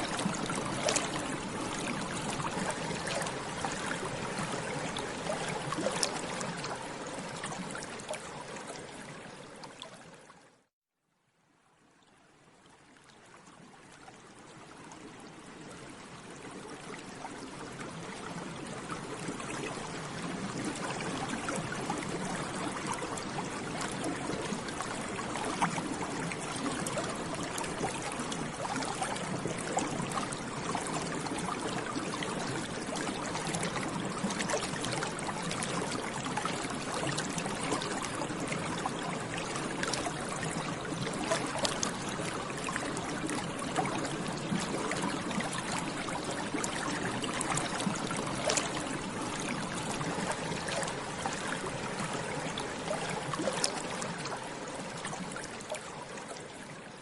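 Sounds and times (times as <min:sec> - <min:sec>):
water bubbling: 0:00.0 - 0:09.6, 0:16.6 - 0:56.6.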